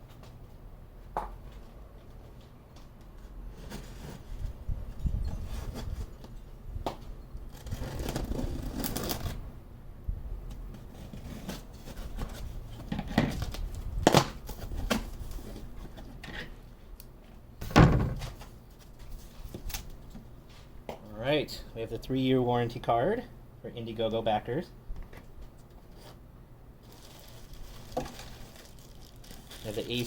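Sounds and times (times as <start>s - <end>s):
packaging rustling and tearing: 7.5s - 9.5s, 26.8s - 30.0s
cardboard box being cut: 7.6s - 9.4s.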